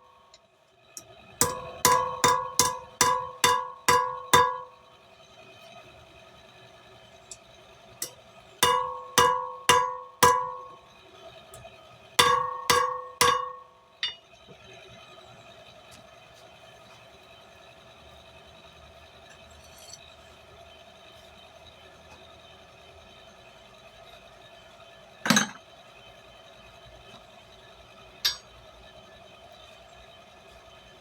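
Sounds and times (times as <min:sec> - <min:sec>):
faint steady hum: 0:00.0 - 0:31.0
hammer striking steel on anvil: 0:01.4 - 0:04.8, 0:08.0 - 0:10.8, 0:12.2 - 0:14.3, 0:25.3 - 0:25.6, 0:28.2 - 0:28.6.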